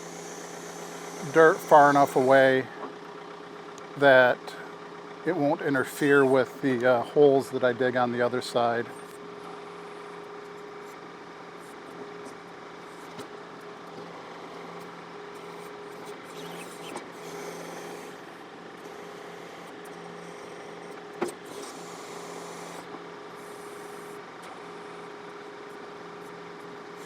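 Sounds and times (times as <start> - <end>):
tractor diesel engine running: 0.0 - 27.0.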